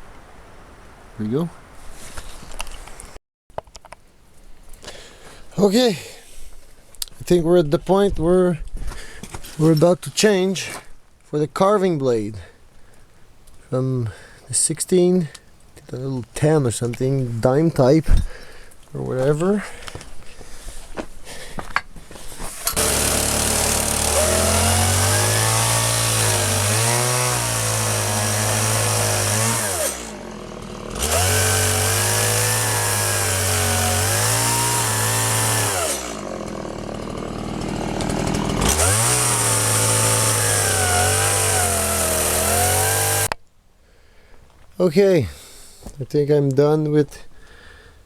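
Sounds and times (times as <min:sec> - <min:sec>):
chainsaw cutting wood: 0:22.5 - 0:43.4.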